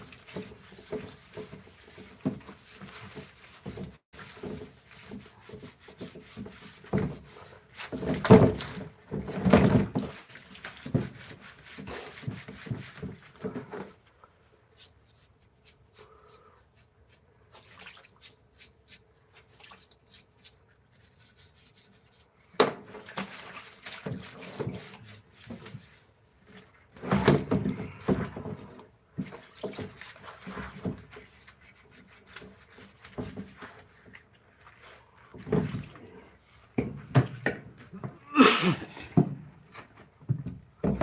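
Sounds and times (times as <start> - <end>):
objects knocking and scraping: 0.0 - 14.0, 39.0 - 41.0.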